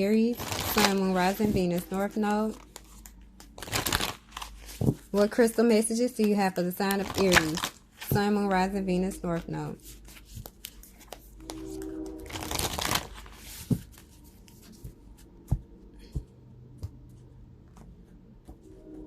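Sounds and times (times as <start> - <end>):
cards shuffling rustle: 0.3 - 5.5, 6.1 - 8.4, 9.3 - 15.6.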